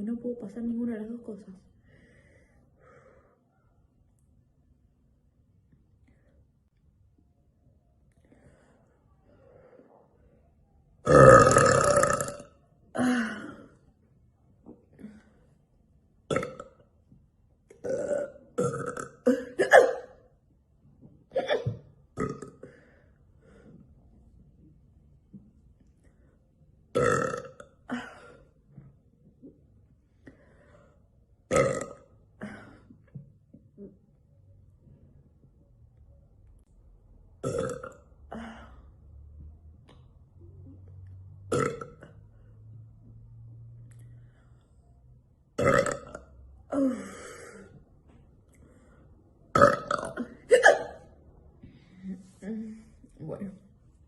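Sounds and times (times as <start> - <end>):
woman belching loudly: 11.0 - 13.1, 16.3 - 16.8, 17.8 - 20.1, 21.4 - 22.6, 26.9 - 28.1, 31.5 - 32.1, 37.4 - 38.0, 41.5 - 42.0, 45.6 - 47.0, 49.5 - 51.0
woman burping: 11.0 - 13.8, 16.3 - 16.8, 17.8 - 20.2, 21.3 - 22.8, 26.9 - 28.5, 31.5 - 33.0, 37.4 - 38.7, 41.5 - 42.1, 45.6 - 47.8, 49.5 - 51.1.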